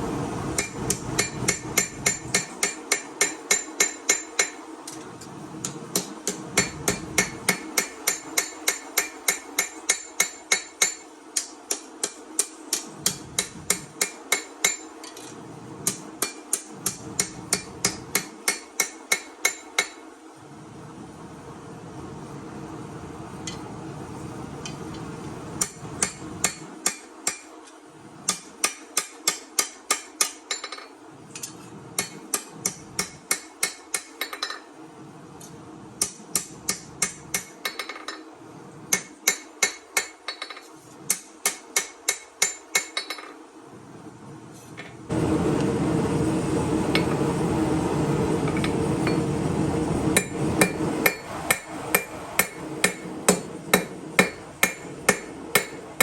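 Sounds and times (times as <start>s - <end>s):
hammer striking steel on anvil: 0.6s - 20.0s, 25.6s - 27.6s, 28.3s - 34.7s, 36.0s - 38.2s, 38.9s - 43.4s, 48.5s - 49.3s, 50.2s - 56.0s.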